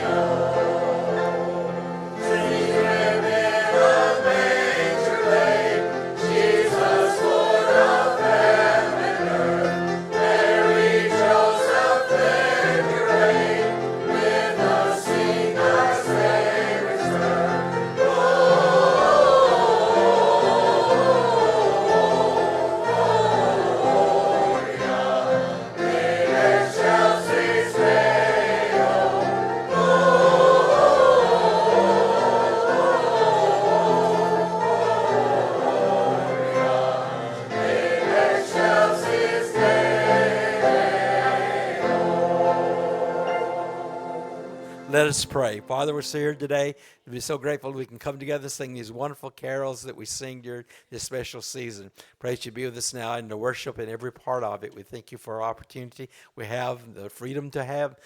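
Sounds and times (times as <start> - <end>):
instrumental accompaniment: 0.0 - 46.4
congregation singing a carol: 0.0 - 46.7.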